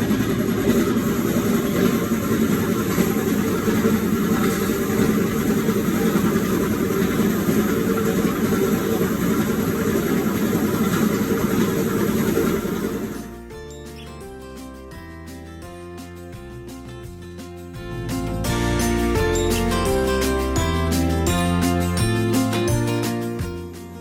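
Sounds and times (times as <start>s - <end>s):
jeep engine running: 0.0s - 13.2s.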